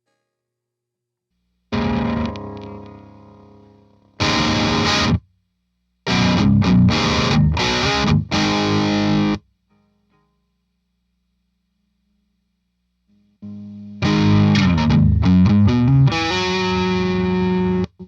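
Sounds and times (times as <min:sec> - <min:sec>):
faint amp hum: 0:01.0 - 0:18.0
overdriven electric guitar chords: 0:01.7 - 0:05.3, 0:06.0 - 0:09.4, 0:13.4 - 0:18.0.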